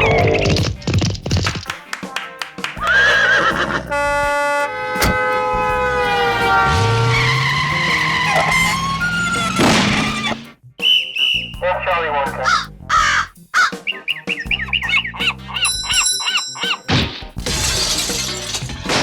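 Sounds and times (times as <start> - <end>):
held pitched sounds: 2.8 - 16.9
sharp crack: 6.3 - 10.4.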